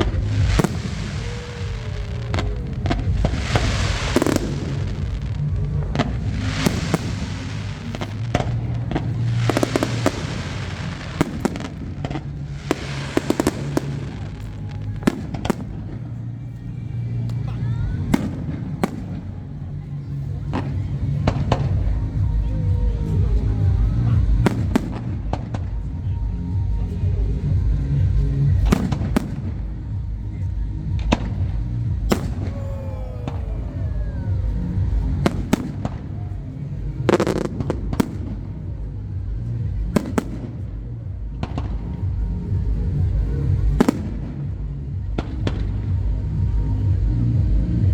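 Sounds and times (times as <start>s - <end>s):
fireworks bangs and cracks: 0.0s - 16.1s, 24.2s - 25.8s, 28.5s - 29.8s, 31.0s - 40.8s, 43.2s - 46.0s.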